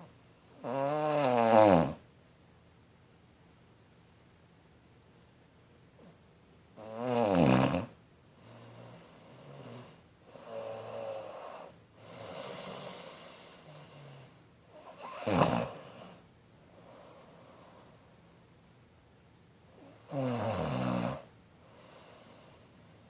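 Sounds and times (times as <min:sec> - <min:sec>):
loud snores: 0:00.0 - 0:02.0, 0:06.8 - 0:16.2, 0:19.8 - 0:22.7
soft breathing: 0:08.3 - 0:18.3, 0:21.6 - 0:23.0.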